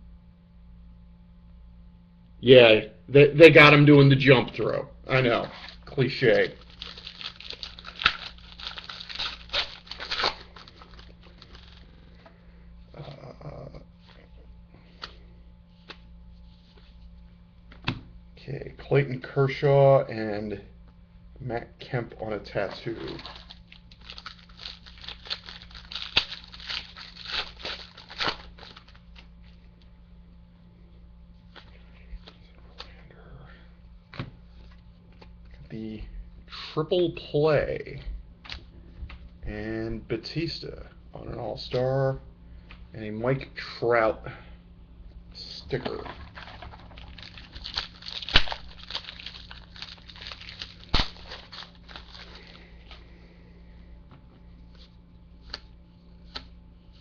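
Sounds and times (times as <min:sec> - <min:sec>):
wrapper and cards rustling: 0:05.2 - 0:12.2, 0:22.5 - 0:29.6, 0:45.7 - 0:53.1.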